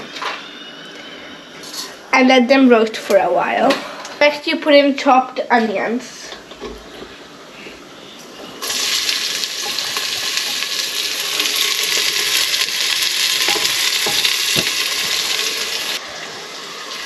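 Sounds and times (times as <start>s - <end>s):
onions sizzling in hot oil: 8.6s - 17.0s.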